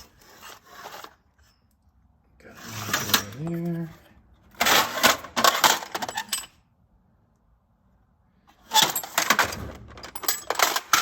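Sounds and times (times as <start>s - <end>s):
steel tools clinking in drawer: 4.6s - 6.6s, 8.6s - 11.0s.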